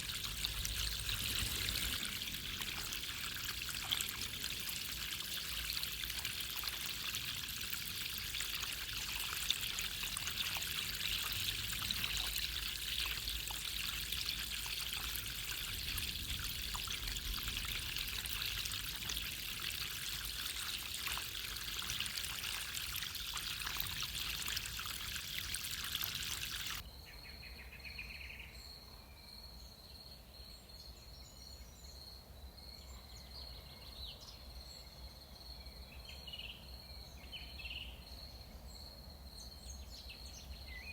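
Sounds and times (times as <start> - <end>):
running water splashing: 0.0 - 26.8.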